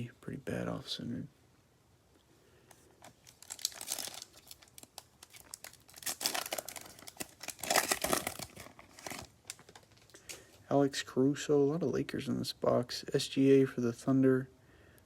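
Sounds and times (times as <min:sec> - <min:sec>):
wrapper tearing and crinkling: 0:03.0 - 0:10.3.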